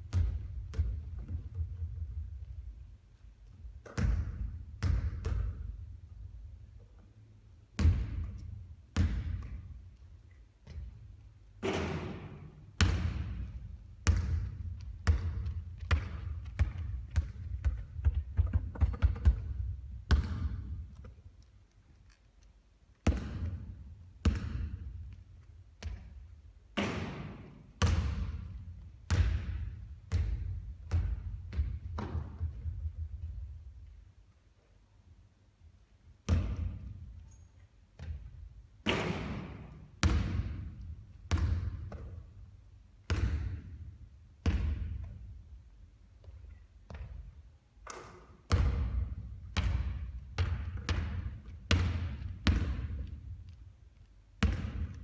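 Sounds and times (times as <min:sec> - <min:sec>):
basketball bouncing on hard floor: 0:00.0 - 0:02.2, 0:03.8 - 0:05.8, 0:07.8 - 0:09.8, 0:10.6 - 0:21.2, 0:23.0 - 0:25.2, 0:25.8 - 0:33.4, 0:38.0 - 0:42.3, 0:43.1 - 0:43.8, 0:44.4 - 0:45.3, 0:46.2 - 0:53.6, 0:54.4 - 0:55.0.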